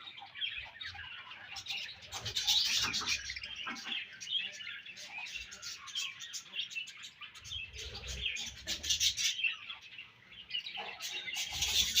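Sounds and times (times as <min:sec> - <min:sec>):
budgerigars chirping and warbling: 0:00.0 - 0:12.0.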